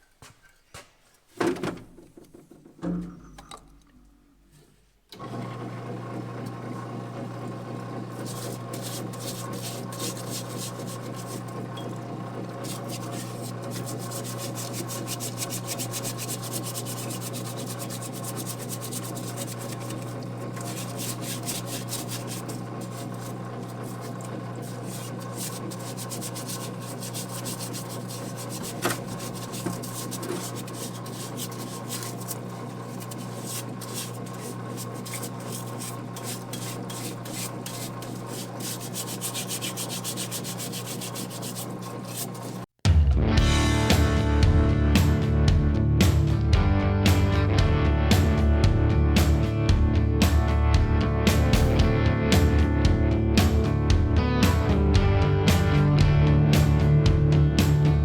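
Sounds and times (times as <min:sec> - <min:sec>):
parts washer pump humming: 0:05.1 - 0:42.8, 0:43.8 - 0:58.0
rubbing and scraping parts: 0:08.1 - 0:12.0, 0:12.6 - 0:42.7.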